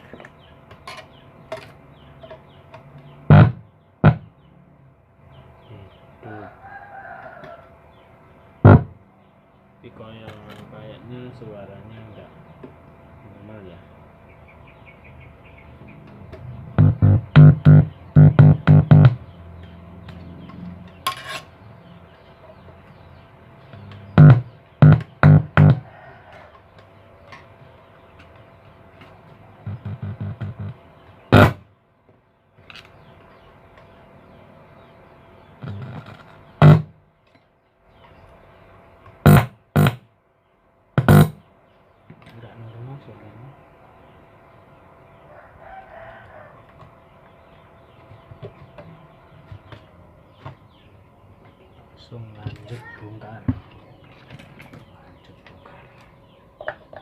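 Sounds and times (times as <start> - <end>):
loud sharp thumps: 3.3 - 4.3, 8.6 - 9.0, 16.7 - 19.3, 24.2 - 25.9, 29.6 - 31.7, 36.6 - 37.0, 39.2 - 40.1, 41.0 - 41.4
hoarse bass-heavy keyboard music: 16.8 - 19.3.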